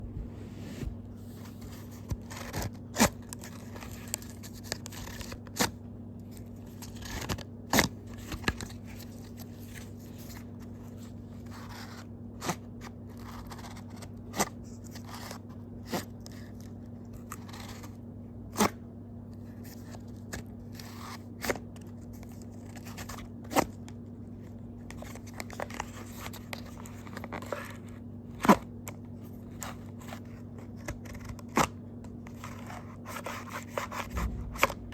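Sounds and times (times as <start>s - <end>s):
steady low hum: 0.0s - 34.9s
scissors cutting cardboard: 11.5s - 16.6s.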